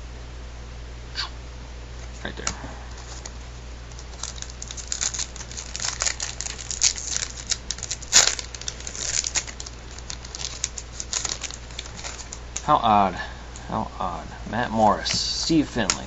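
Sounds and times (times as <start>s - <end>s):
cards being shuffled: 2.0s - 12.7s, 14.6s - 16.0s
wrapper crinkling: 3.0s - 12.8s.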